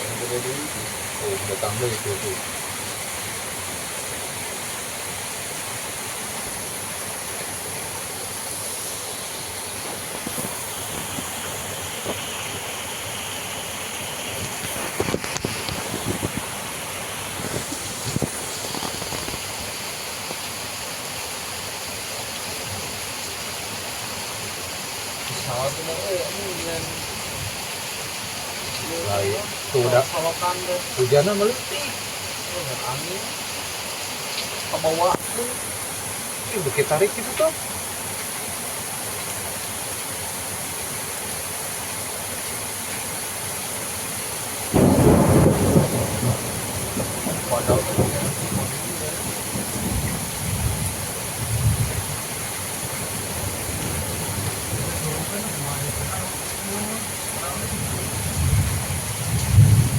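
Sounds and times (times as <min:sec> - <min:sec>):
light rain: 0:00.0 - 0:59.9
wind rushing through pines: 0:00.0 - 0:59.9
wind gust buffeting microphone: 0:14.4 - 0:19.6, 0:44.8 - 0:56.5, 0:57.5 - 0:59.9.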